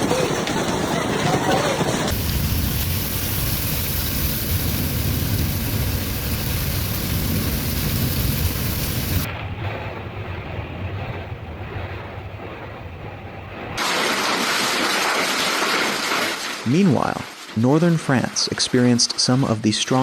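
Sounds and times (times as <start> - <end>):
rain: 0.0 - 9.3, 13.8 - 19.5
strong wind rushing: 0.0 - 13.8
wind rumble on microphone: 0.0 - 13.8.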